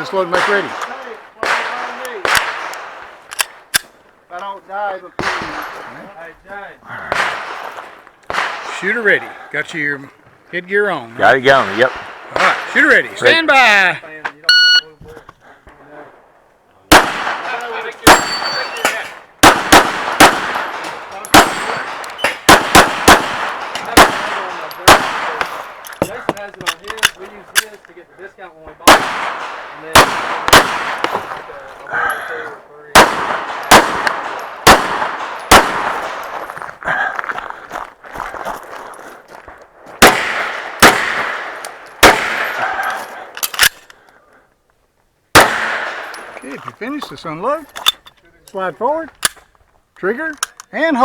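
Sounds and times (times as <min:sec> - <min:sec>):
pistol shots with echo: 0:00.2 - 0:03.9, 0:05.2 - 0:06.0, 0:07.0 - 0:09.2, 0:16.9 - 0:25.8, 0:28.8 - 0:31.6, 0:32.9 - 0:36.4, 0:40.0 - 0:42.8, 0:45.3 - 0:46.4
quieter gunshot cracks: 0:07.1 - 0:08.9, 0:16.9 - 0:25.8, 0:28.9 - 0:31.5, 0:32.9 - 0:36.4, 0:40.0 - 0:42.7, 0:45.3 - 0:46.1.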